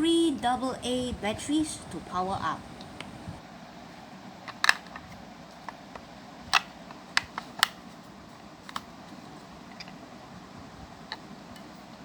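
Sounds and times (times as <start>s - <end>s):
plastic clicks and snaps: 4.4s - 7.8s, 8.6s - 8.9s.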